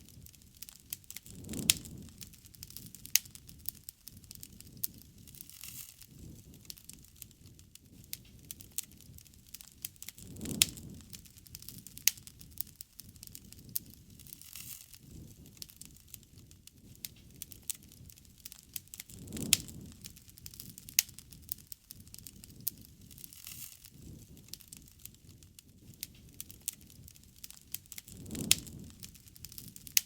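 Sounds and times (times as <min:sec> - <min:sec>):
campfire crackling and popping: 0:00.0 - 0:30.0
low rumble: 0:19.2 - 0:20.3, 0:28.1 - 0:29.8.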